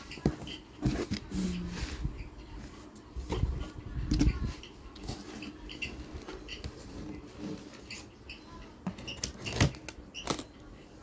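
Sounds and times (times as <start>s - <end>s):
cardboard and plastic rustling: 0.0s - 8.1s.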